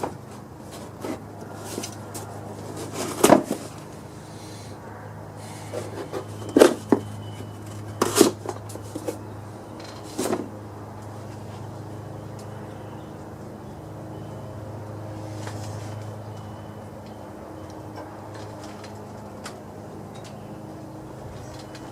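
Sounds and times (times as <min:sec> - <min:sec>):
tools and parts clanking: 0:00.0 - 0:04.0, 0:05.6 - 0:10.6.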